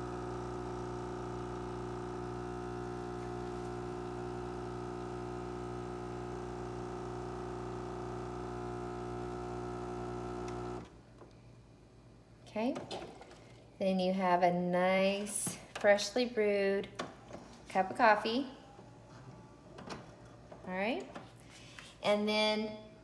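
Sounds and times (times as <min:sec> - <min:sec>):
coffee machine humming: 0:00.0 - 0:11.0.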